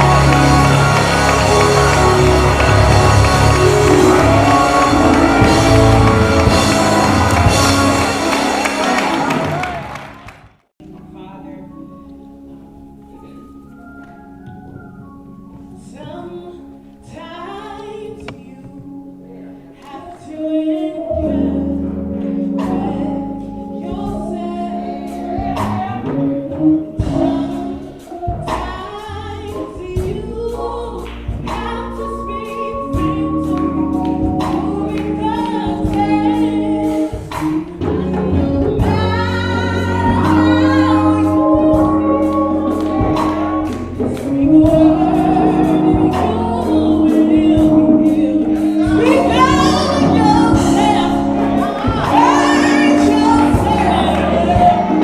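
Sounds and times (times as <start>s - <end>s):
steady beat: 0.0s - 9.9s, 41.6s - 55.0s
held chords: 0.0s - 10.1s, 10.8s - 55.0s
gospel choir singing: 0.0s - 10.3s, 15.8s - 55.0s.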